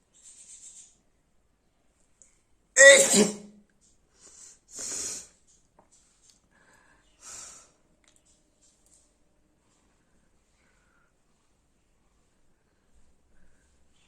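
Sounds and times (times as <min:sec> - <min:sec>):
person blowing nose: 0:02.8 - 0:03.4.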